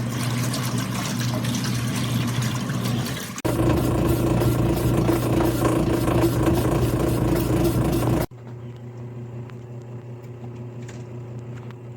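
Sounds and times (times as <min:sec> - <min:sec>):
washing machine motor humming: 0:00.0 - 0:08.3.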